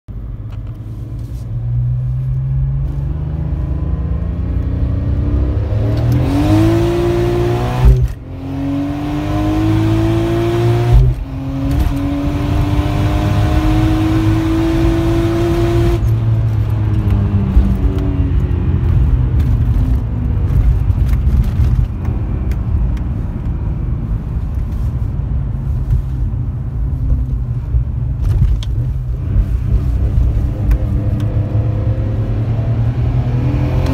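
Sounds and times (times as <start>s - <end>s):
car engine accelerating hard: 2.5s - 21.9s, 28.2s - 33.9s.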